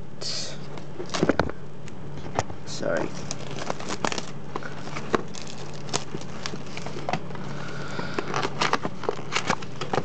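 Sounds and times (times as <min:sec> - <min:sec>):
plastic wrapping crackling: 0:03.0 - 0:10.0
plastic wrapping rustle: 0:03.0 - 0:10.0.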